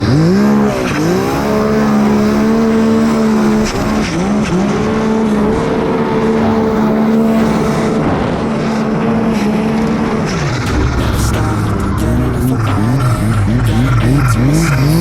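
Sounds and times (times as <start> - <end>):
snowmobile engine revving: 0.0 - 9.8.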